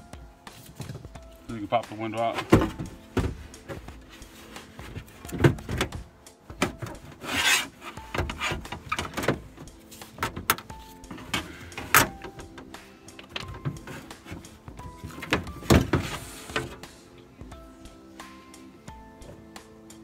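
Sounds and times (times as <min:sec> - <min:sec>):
scraping rub: 0:06.9 - 0:09.1, 0:15.9 - 0:16.8.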